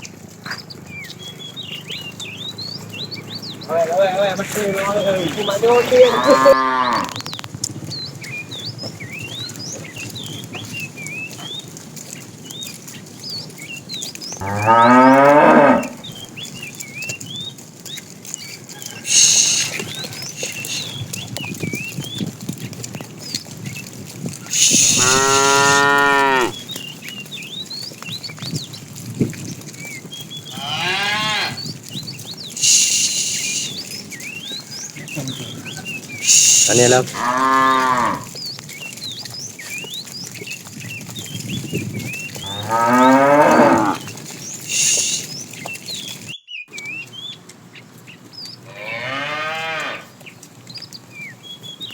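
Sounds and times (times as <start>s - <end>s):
small birds chirping faintly: 0.0s - 28.9s, 29.6s - 51.9s
cattle mooing: 3.6s - 7.2s, 14.4s - 16.2s, 19.1s - 21.0s, 24.4s - 26.6s, 30.5s - 31.7s, 32.6s - 33.8s, 35.0s - 38.4s, 42.4s - 45.3s, 48.7s - 50.1s.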